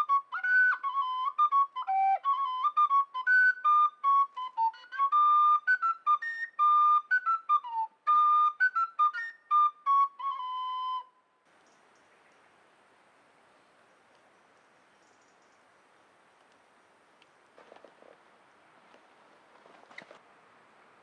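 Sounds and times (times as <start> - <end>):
flute melody: 0.0 - 11.4
faint steady hiss: 0.0 - 21.0.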